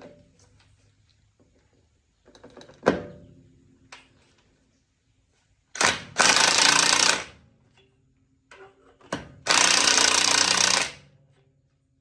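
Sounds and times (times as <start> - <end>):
impact wrench hammering: 5.8 - 7.3, 9.4 - 11.0.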